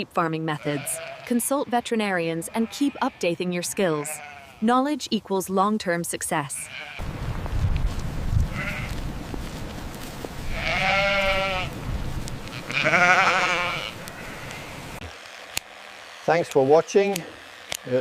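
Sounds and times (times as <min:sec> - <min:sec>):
sheep bleating: 0:00.5 - 0:04.8, 0:06.5 - 0:07.0, 0:08.5 - 0:09.0, 0:10.5 - 0:11.8, 0:12.4 - 0:18.0.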